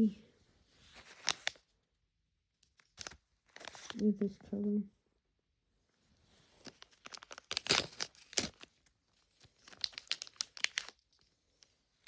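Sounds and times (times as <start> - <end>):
crinkly packaging torn and crumpled: 0.9 - 1.6, 2.8 - 4.0, 6.6 - 11.0.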